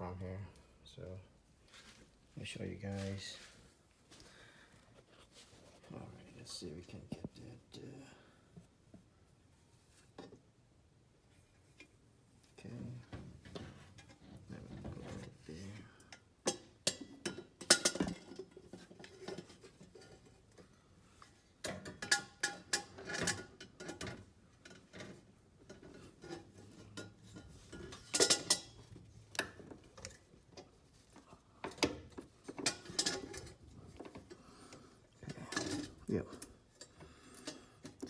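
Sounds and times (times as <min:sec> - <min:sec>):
metallic clinks and rattles: 0:25.9 - 0:30.2, 0:31.7 - 0:34.3.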